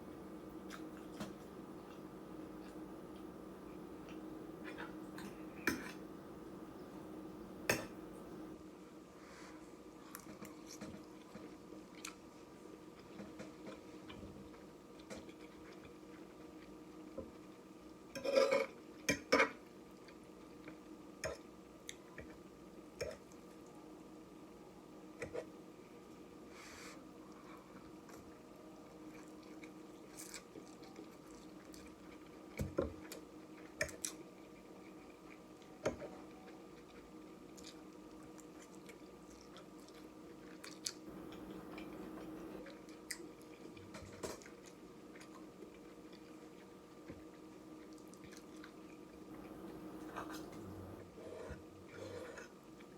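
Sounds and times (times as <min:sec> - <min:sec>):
faint steady hum: 0:00.0 - 0:52.9
person chewing food: 0:00.2 - 0:08.5, 0:29.1 - 0:51.0.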